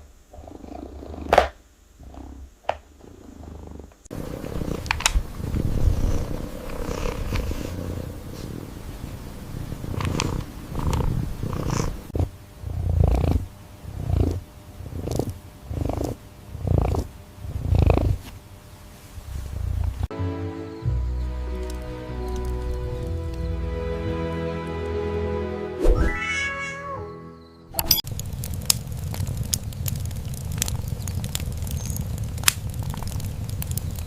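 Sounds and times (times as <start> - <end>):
cat purring: 0.3 - 18.4, 19.2 - 20.1.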